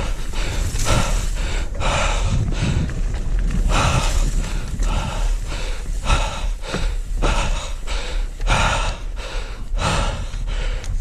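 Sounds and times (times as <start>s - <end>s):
person breathing heavily: 0.0s - 11.0s
wind rumble on microphone: 0.0s - 11.0s.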